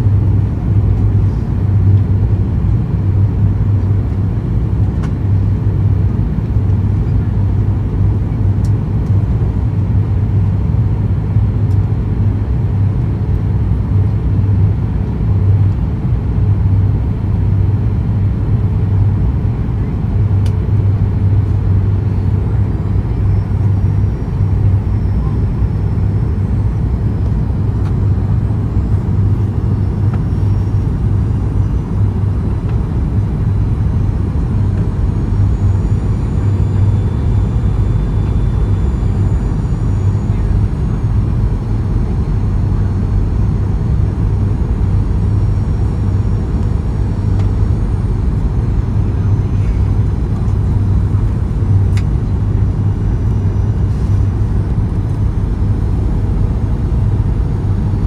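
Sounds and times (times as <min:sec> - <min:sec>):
airplane cabin rumble: 0:00.0 - 0:58.0
faint high whining tones: 0:20.7 - 0:58.0.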